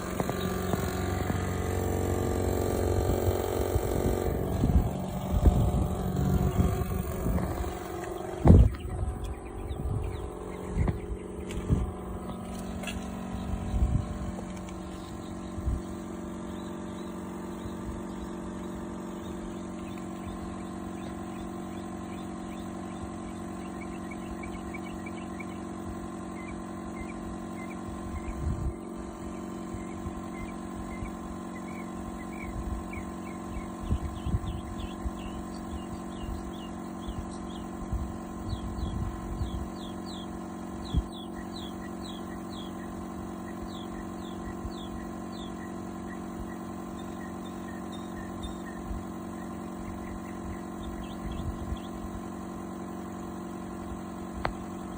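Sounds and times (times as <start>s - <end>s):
irregular low thumps: 0.0s - 16.0s
air conditioning unit humming: 0.0s - 54.9s.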